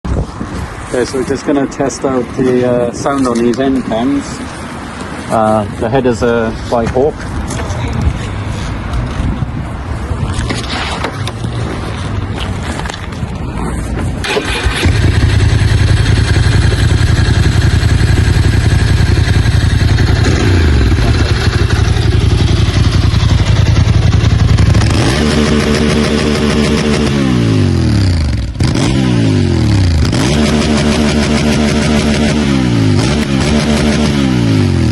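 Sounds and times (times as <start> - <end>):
motorcycle engine idling and revving: 8.9 - 34.9.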